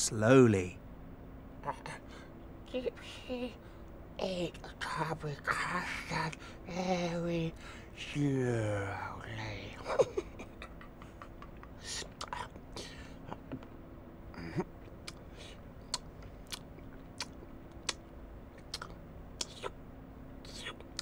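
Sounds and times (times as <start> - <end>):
faint steady hum: 0.0 - 21.0
chewing with wet mouth clicks: 15.9 - 18.0, 18.6 - 19.6.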